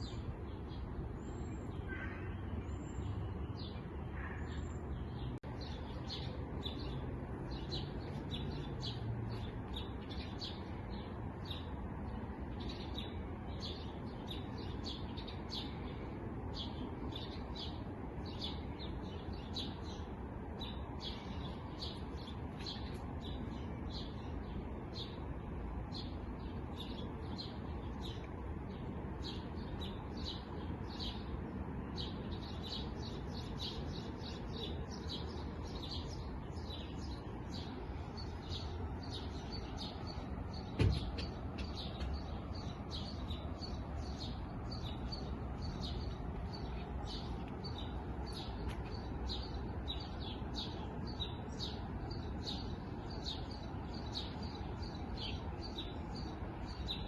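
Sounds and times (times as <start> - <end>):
small birds chirping: 0.0 - 57.0
sharp thump: 40.7 - 41.7.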